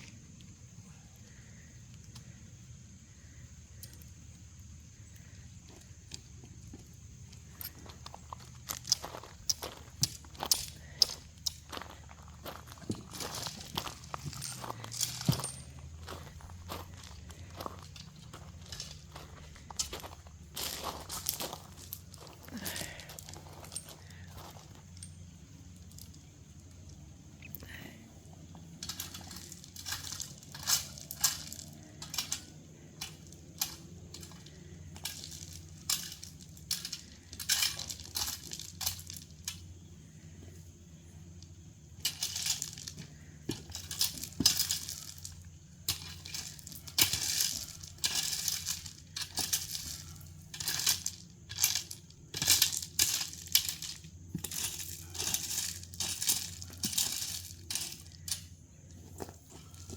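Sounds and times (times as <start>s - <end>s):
steady low hum: 0.0s - 59.9s
crushed rock crunching under shovel: 7.4s - 25.2s, 28.8s - 39.8s, 41.9s - 59.9s.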